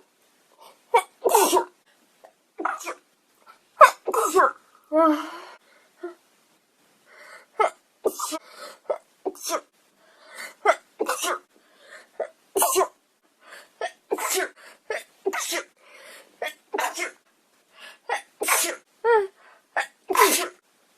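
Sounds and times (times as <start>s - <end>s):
quiet breaths: 0.2s - 1.0s, 1.8s - 2.4s, 4.6s - 7.6s, 8.3s - 12.5s, 13.2s - 19.8s
woman sneezing: 8.1s - 8.4s, 18.1s - 18.8s, 19.8s - 20.6s.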